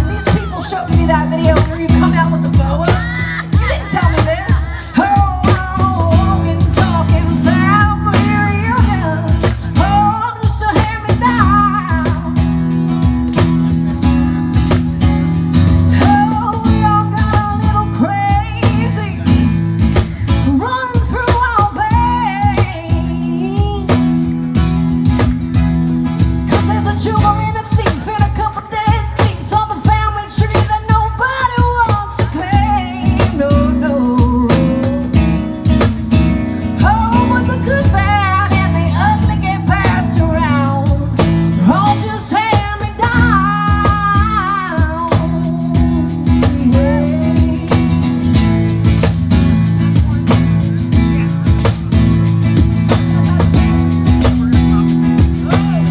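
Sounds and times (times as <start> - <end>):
person singing: 0.0 - 12.4, 26.5 - 35.6, 36.6 - 48.6, 53.1 - 55.9
bass: 0.0 - 55.9
guitar: 0.0 - 55.9
steady drum beat: 0.0 - 55.9.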